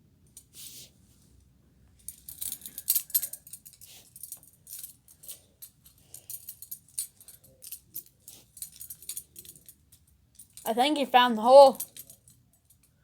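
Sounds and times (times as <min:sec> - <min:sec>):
key clinking on handcuffs: 0:02.0 - 0:10.7, 0:11.7 - 0:13.0.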